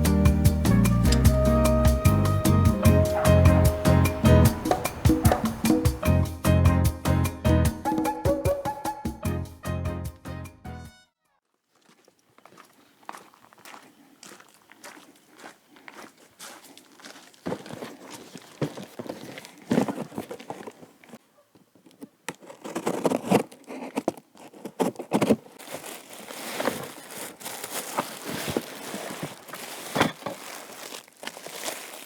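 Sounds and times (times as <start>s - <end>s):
packaging crinkling and tearing: 22.3s - 32.0s.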